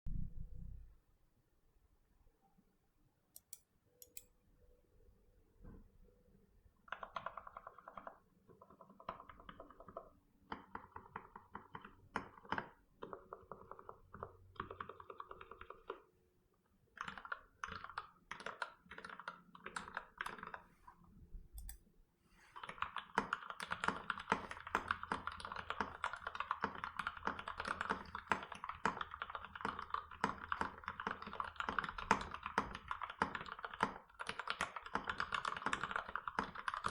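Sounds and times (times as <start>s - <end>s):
mechanical keyboard typing: 6.8s - 16.1s, 16.9s - 20.7s, 22.6s - 36.9s.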